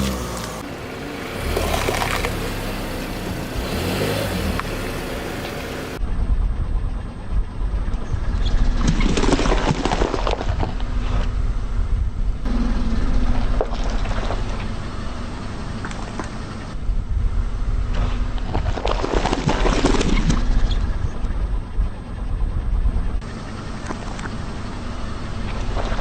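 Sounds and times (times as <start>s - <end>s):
objects crunching under tyres: 0.0s - 6.0s, 8.4s - 11.5s, 12.5s - 16.8s, 17.8s - 21.1s, 23.7s - 26.0s
car engine running: 0.0s - 9.6s, 10.4s - 26.0s.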